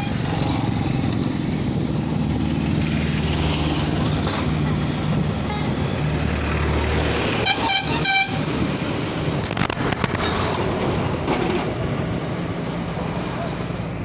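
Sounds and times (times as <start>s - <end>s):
vehicle horn toots: 7.4s - 8.5s.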